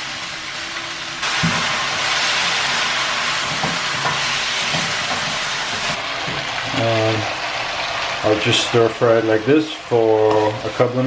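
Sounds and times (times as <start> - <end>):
vegetables sizzling in a pan: 0.0 - 11.0.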